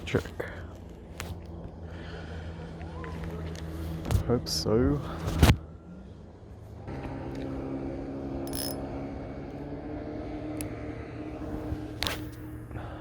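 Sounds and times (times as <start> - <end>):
motor engine running: 5.8 - 13.0.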